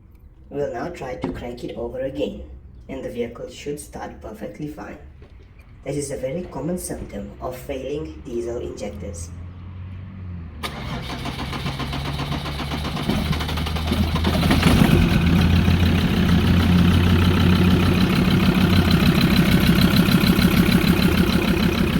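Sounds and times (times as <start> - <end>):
diesel engine starting and running: 0.0 - 21.9.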